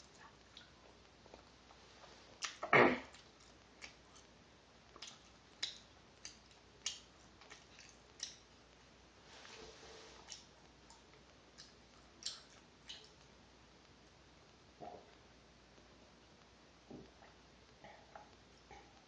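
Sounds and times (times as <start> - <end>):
sharp wet clicks: 5.0 - 8.5, 10.3 - 13.3.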